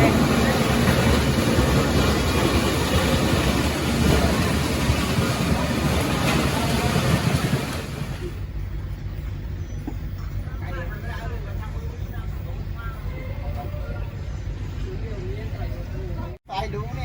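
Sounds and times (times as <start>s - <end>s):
rushing water hiss: 0.0s - 8.4s
boat engine rumble: 0.0s - 17.0s.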